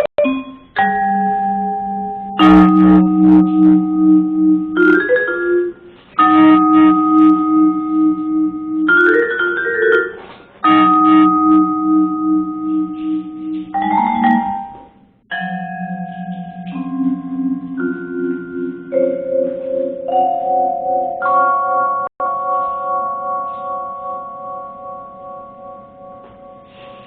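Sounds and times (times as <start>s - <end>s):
ringing chords with high note runs: 0.0s - 27.0s.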